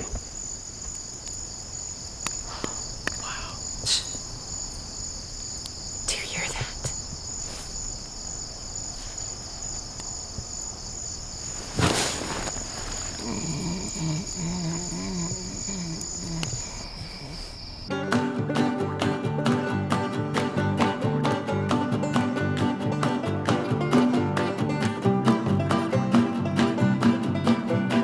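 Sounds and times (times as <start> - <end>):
crickets chirping: 0.0 - 18.9
rustling: 6.4 - 17.9.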